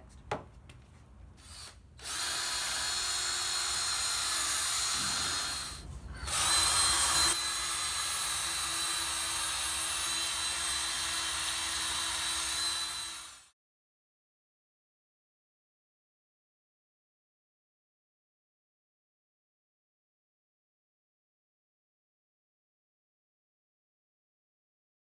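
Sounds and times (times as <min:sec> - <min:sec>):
electric drill sanding whine: 0:01.5 - 0:13.5.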